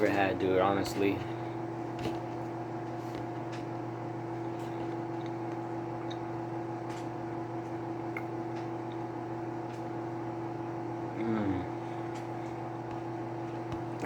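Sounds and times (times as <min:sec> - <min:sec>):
microwave oven humming: 0:00.0 - 0:14.0.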